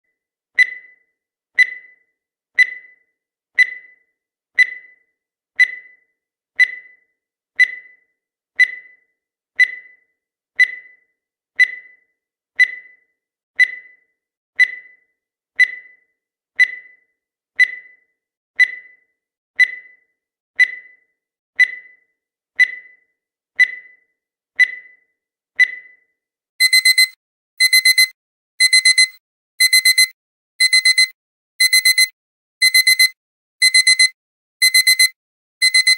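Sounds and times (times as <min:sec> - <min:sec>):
harsh alarm beeping: 0:26.6 - 0:35.9
short electronic beeps: 0:26.6 - 0:35.9.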